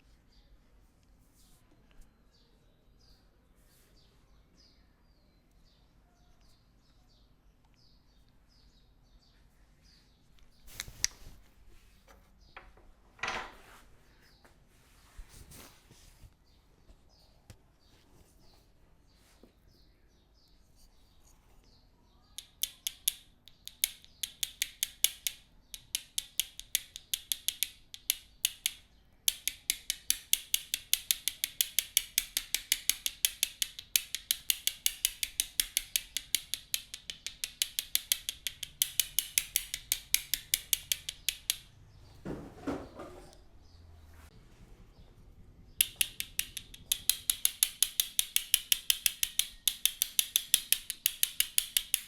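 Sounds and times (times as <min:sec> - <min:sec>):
hands tapping on head: 0:22.4 - 0:42.4, 0:45.8 - 0:52.0.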